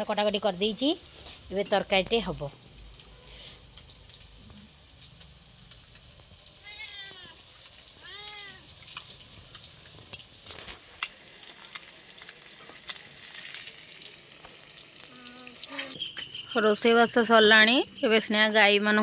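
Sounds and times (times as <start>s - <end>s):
oil sizzling in a pan: 0.0s - 16.0s
cat meowing: 6.6s - 8.7s.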